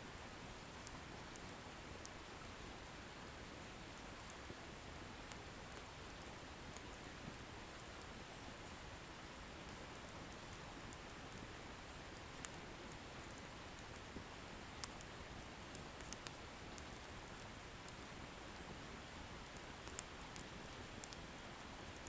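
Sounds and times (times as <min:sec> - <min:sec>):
firewood crackling and popping: 0:09.6 - 0:22.0.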